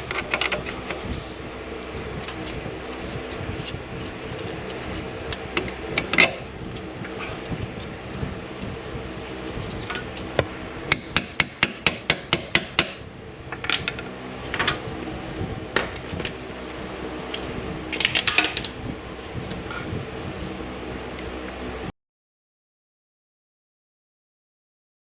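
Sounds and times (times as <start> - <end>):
steady low hum: 0.0 - 21.9
sharp metallic strikes ringing: 10.9 - 13.0.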